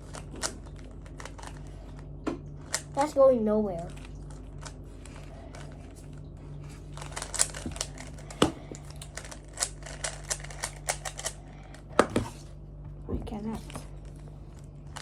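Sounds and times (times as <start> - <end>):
puzzle cube clicking: 7.0 - 11.4.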